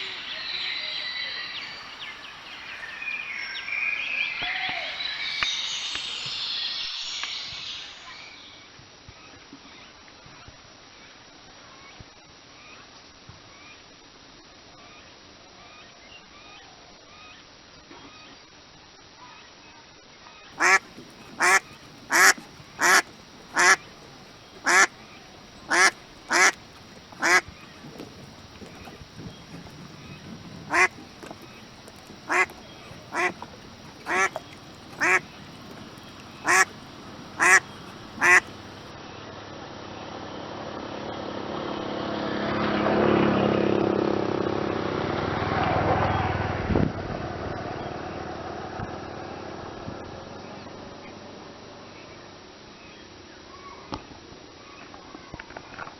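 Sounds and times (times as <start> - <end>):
broad noise: 0.0 - 8.6, 20.6 - 39.0
duck quacking: 20.6 - 38.9.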